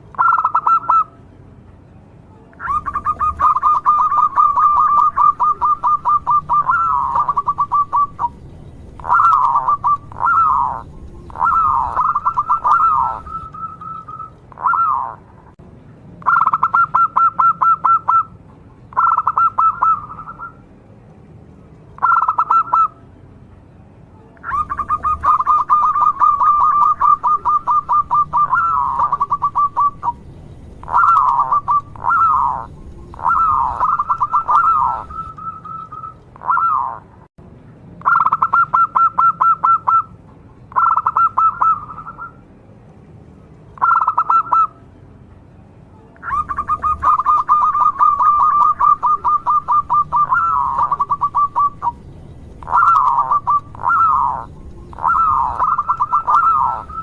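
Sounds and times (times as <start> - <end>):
dove cooing: 0.1 - 1.1, 2.6 - 8.4, 9.0 - 15.3, 16.3 - 18.3, 18.9 - 20.6, 22.0 - 22.9, 24.4 - 37.0, 40.8 - 42.3, 43.8 - 44.7, 46.2 - 52.0, 52.6 - 57.0.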